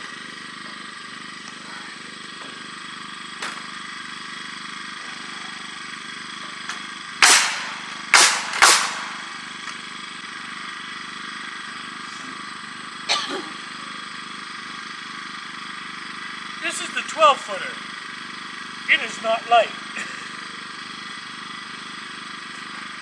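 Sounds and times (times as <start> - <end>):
steady machine hum: 5.0 - 9.9, 16.2 - 20.5
sharp bangs of framing work: 7.2 - 9.9.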